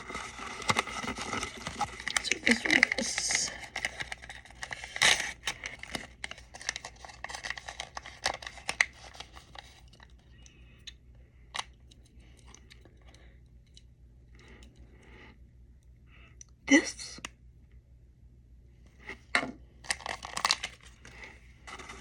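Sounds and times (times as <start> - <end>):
plastic wrapper crinkling: 0.0 - 10.4, 19.8 - 22.0.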